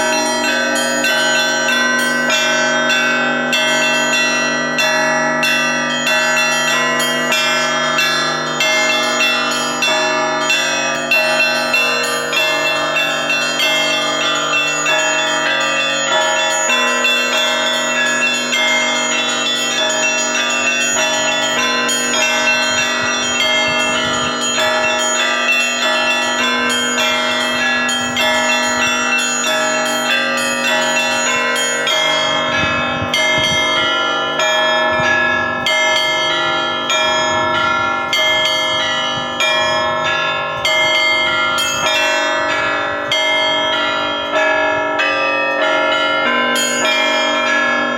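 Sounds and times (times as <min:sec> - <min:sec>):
church bells pealing: 0:00.0 - 0:47.9.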